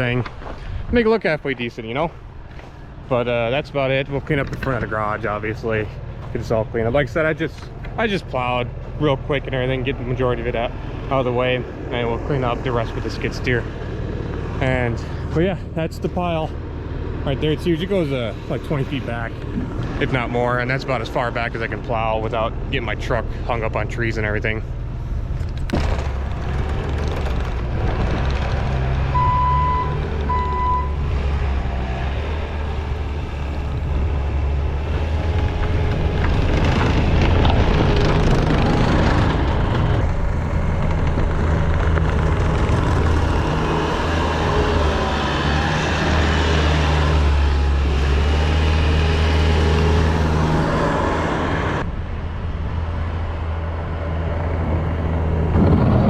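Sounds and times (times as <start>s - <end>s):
skid steer engine running: 2.0s - 56.0s
backup alarm beeps: 29.2s - 31.0s.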